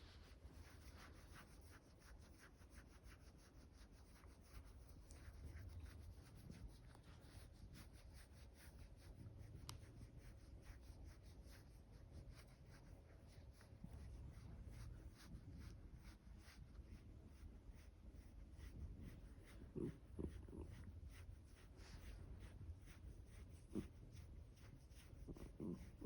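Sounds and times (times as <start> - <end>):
dog panting: 18.9 - 26.0.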